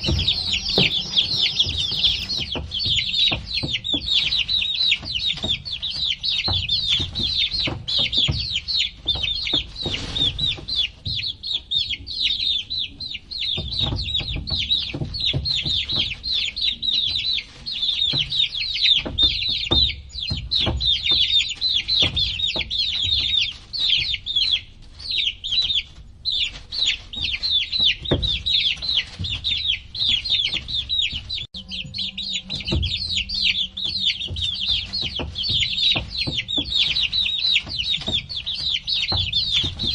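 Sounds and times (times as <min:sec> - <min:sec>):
low knocks and thumps: 0:00.0 - 0:04.0
baby chicks peeping: 0:00.0 - 0:39.9.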